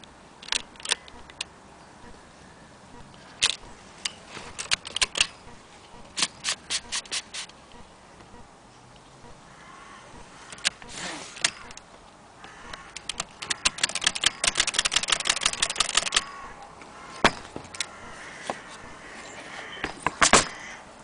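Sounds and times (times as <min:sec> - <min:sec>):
typewriter keystrokes clicking: 0:04.6 - 0:05.3, 0:12.9 - 0:16.3.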